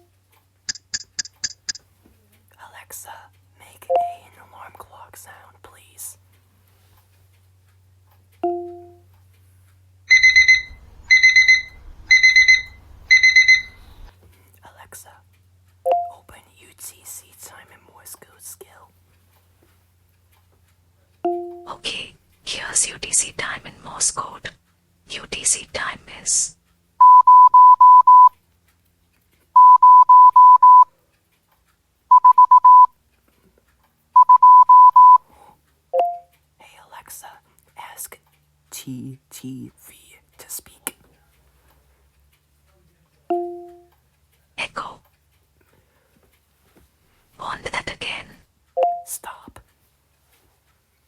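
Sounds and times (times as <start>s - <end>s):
rapid high electronic beeps: 0.7s - 1.8s, 3.9s - 4.2s, 10.1s - 14.0s, 32.1s - 32.9s, 34.2s - 35.2s, 43.3s - 43.9s
short lower tone: 8.4s - 9.0s, 21.3s - 21.8s, 43.3s - 43.9s.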